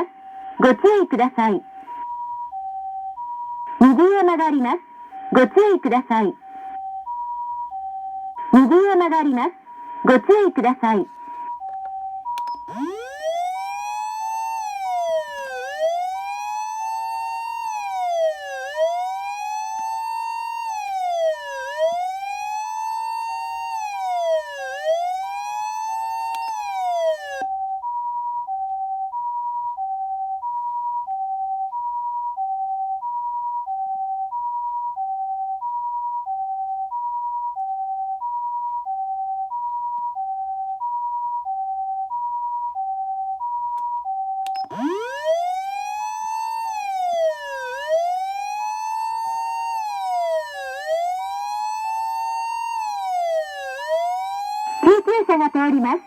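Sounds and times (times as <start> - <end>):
electronic siren wail: 0.0 - 2.0, 8.4 - 27.5, 44.5 - 56.0
ambulance two-tone siren: 0.0 - 56.0.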